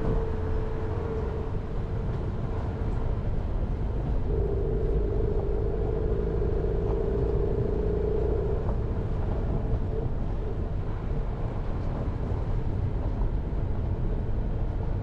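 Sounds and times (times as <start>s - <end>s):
steady whine: 0.0s - 10.8s
engine and tyre rumble: 0.0s - 15.0s.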